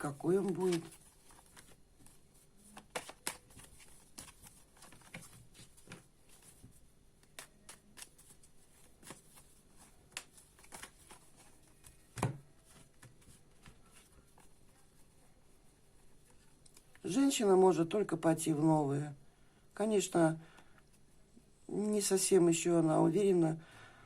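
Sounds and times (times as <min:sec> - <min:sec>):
cards being shuffled: 0:00.0 - 0:14.8.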